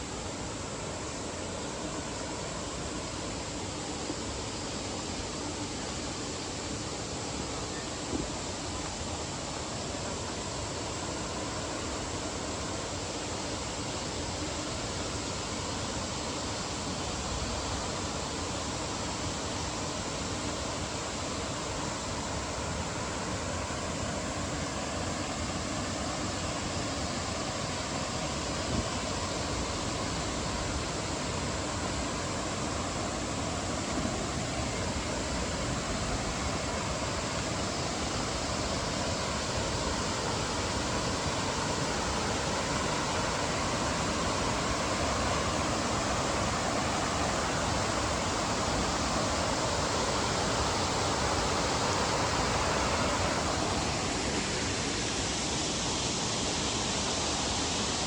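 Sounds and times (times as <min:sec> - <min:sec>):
fast-flowing stream rushing: 0:19.4 - 0:58.0.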